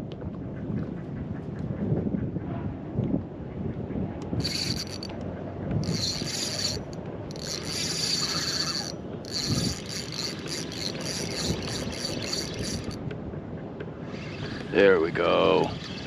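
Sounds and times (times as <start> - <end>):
fishing reel grinding and ratcheting: 4.4 - 5.1, 5.8 - 13.0.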